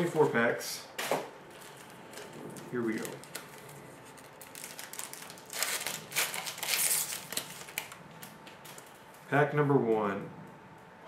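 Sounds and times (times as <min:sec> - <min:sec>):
card pack wrapper tearing and crinkling: 0:01.6 - 0:08.9.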